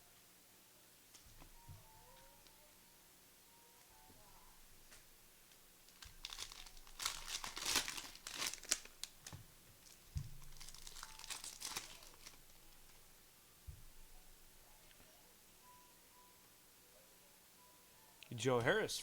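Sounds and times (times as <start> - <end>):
wrappers crinkling and tearing: 5.8 - 13.0
soft thuds: 10.1 - 10.5, 13.7 - 14.1.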